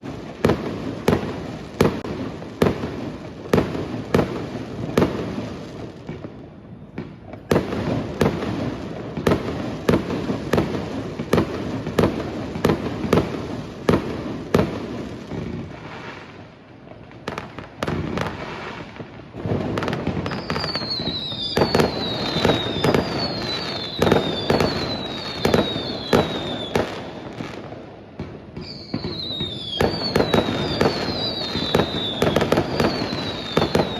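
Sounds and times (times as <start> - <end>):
fireworks banging: 0.0 - 33.9
fireworks crackling: 0.0 - 33.9
short falling whistles: 20.2 - 26.7, 28.6 - 33.9.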